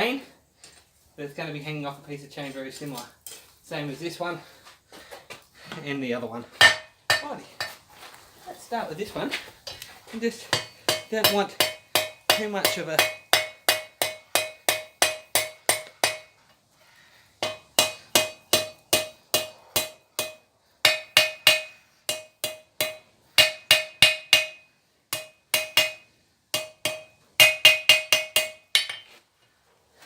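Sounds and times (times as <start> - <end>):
hammer striking steel on anvil: 6.6 - 7.8, 10.5 - 16.4, 17.4 - 29.1.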